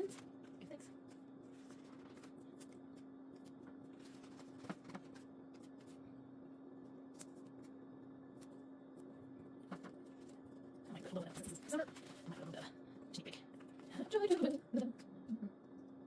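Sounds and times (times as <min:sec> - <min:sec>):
steady low hum: 0:00.0 - 0:16.0
paper taps and rustles: 0:03.4 - 0:05.9.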